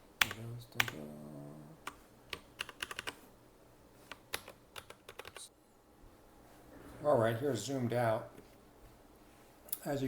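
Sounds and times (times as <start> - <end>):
mechanical keyboard keystroke clicks: 4.3 - 5.4.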